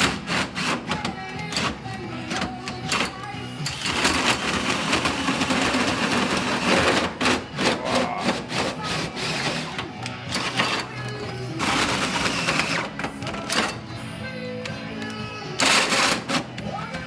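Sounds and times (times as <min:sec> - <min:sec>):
electric drill boring metal: 0:00.0 - 0:14.0
music playing: 0:00.0 - 0:17.0.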